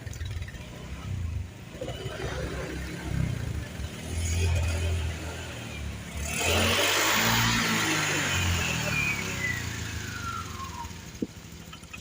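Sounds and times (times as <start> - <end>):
vehicle engine rumbling: 0.0 - 12.0.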